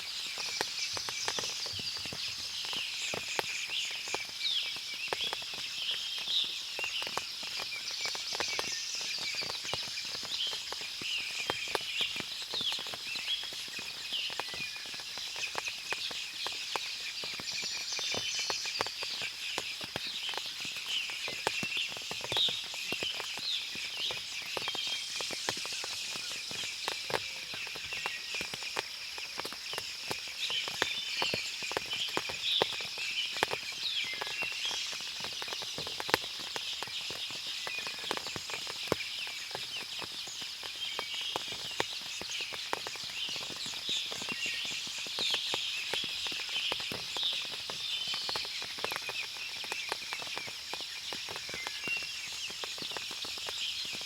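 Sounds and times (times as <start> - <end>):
steady high hiss: 0.0 - 31.8
birds chirping: 0.0 - 54.0
water dripping from trees: 0.0 - 54.0.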